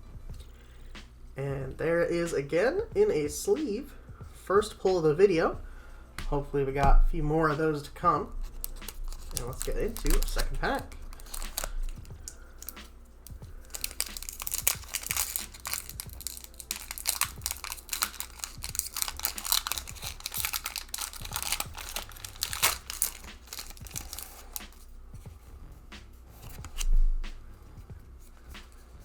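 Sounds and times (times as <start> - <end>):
foil wrapper tearing and crinkling: 8.4 - 24.9, 26.4 - 26.9.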